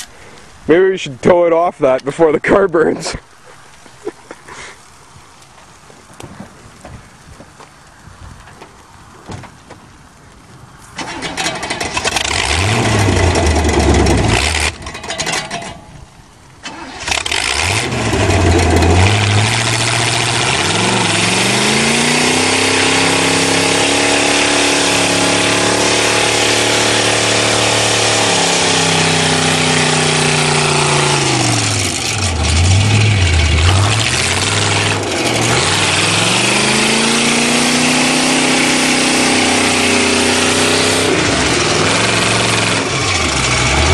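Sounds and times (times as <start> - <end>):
car engine starting and revving: 11.0 - 15.5, 16.6 - 43.9.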